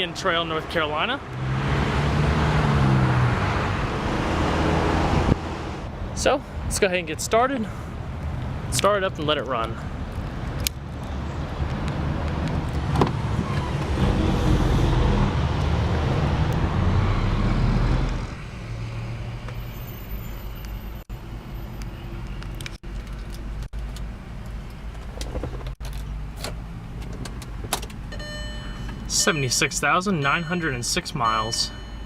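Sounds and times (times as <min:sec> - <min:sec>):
car engine starting and idling: 0:22.9 - 0:32.0.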